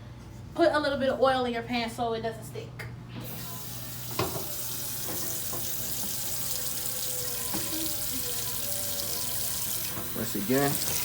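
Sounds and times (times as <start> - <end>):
faucet running into a pot: 3.2 - 11.0.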